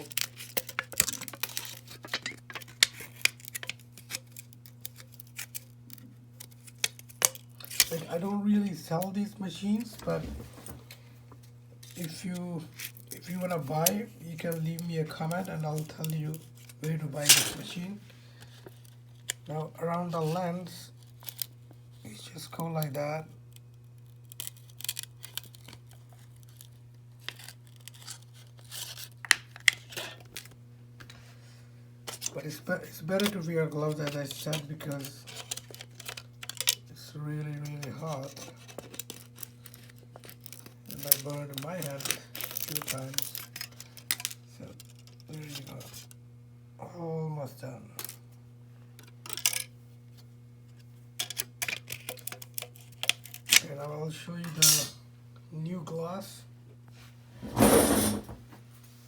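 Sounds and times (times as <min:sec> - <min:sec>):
glass scraping and crackling: 0:00.0 - 0:06.0
low electrical hum: 0:00.0 - 0:59.0.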